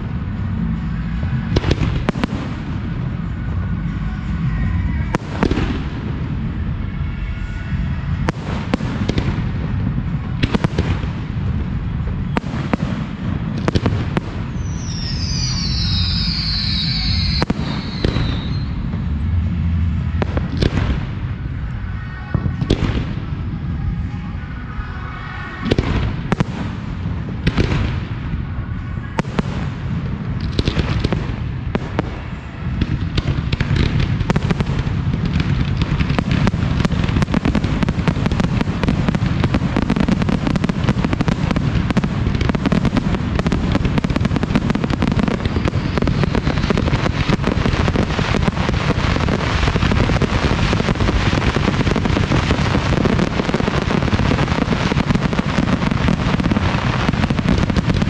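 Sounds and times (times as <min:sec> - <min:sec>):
fireworks barrage of booms: 0:00.0 - 0:58.0.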